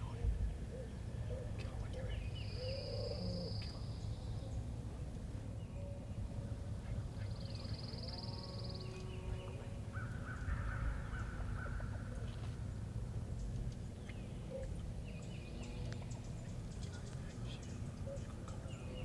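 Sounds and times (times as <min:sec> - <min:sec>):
low wind rumble: 0:00.0 - 0:01.4.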